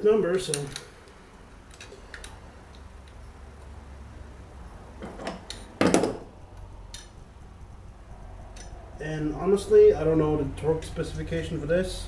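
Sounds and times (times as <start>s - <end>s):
loud knock of metal parts: 5.0s - 6.3s.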